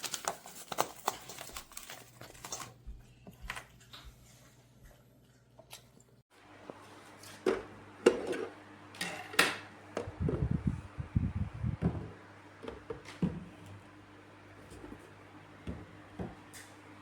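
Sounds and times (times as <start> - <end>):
low rubbing thuds: 10.1 - 12.1.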